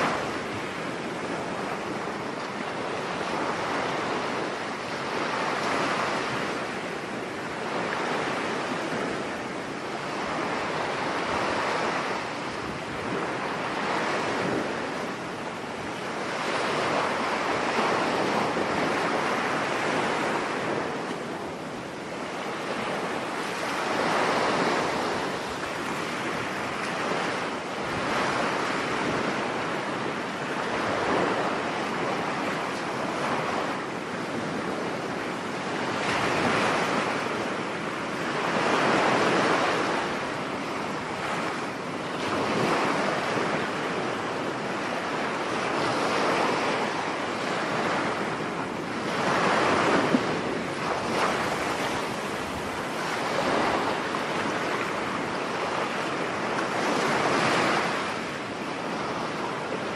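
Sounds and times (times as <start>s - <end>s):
surf breaking on beach: 0.0s - 59.9s
wind: 0.0s - 59.9s.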